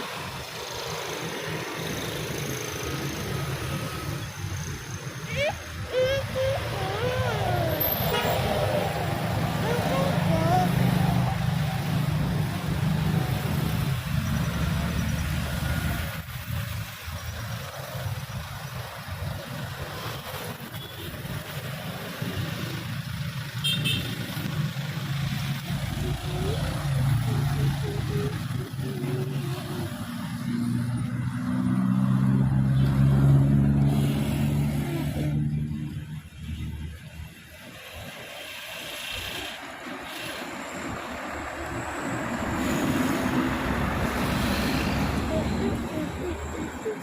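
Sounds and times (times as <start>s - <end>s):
bus engine low hum: 0.0s - 20.6s, 24.2s - 38.3s, 39.7s - 47.0s
diesel engine low drone: 40.5s - 47.0s.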